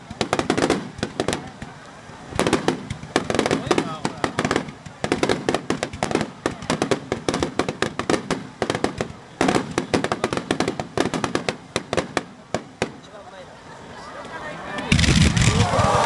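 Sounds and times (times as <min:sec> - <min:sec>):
fireworks crackling pops: 0:00.0 - 0:13.3, 0:14.8 - 0:16.0.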